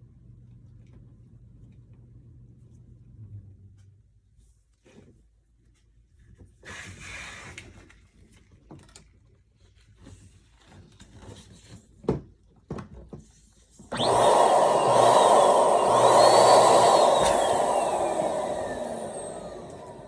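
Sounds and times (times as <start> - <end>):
electric balloon pump whirring: 13.9 - 20.0.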